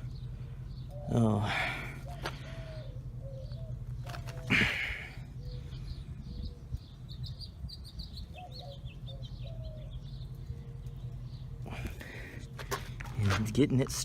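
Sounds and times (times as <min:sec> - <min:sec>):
small birds chirping: 0:00.0 - 0:14.0
steady low hum: 0:00.0 - 0:14.0.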